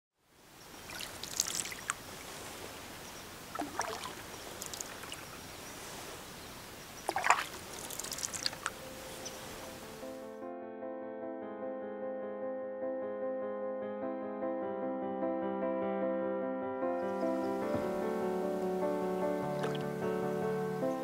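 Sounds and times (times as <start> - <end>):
paddle splashing in water: 0.8 - 10.0, 19.4 - 20.0
water washing: 0.8 - 10.1, 19.3 - 20.1
piano music: 8.6 - 21.0.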